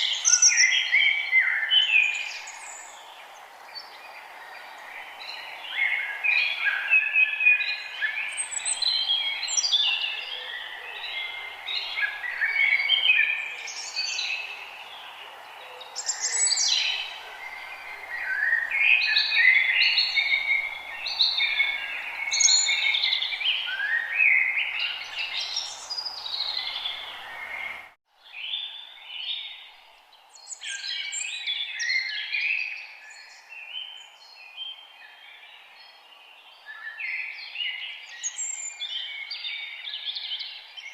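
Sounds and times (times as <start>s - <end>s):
steady background hiss: 0.0s - 27.9s
songbirds chirping and trilling: 0.0s - 40.9s.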